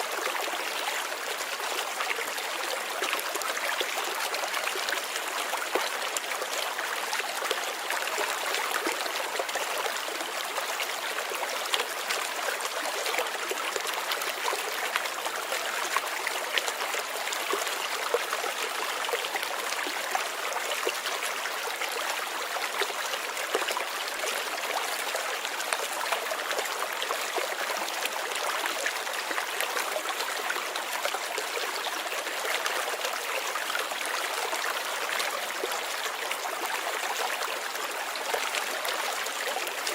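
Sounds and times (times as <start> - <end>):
river water running over rocks: 0.0 - 39.9.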